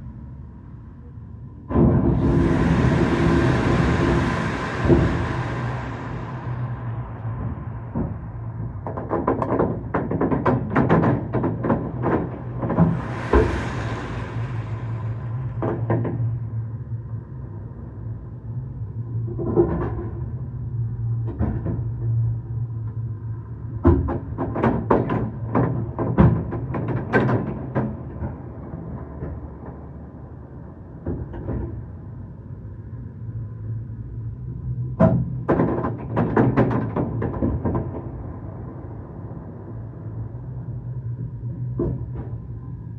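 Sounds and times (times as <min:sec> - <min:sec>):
steady low hum: 0:00.0 - 0:10.0, 0:11.8 - 0:19.5, 0:37.4 - 0:42.9.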